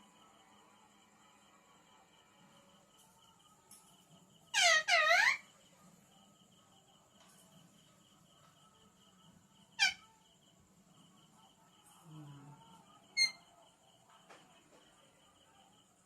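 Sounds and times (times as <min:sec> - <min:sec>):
parrot call: 0:04.5 - 0:05.5, 0:09.8 - 0:10.2, 0:13.1 - 0:13.4.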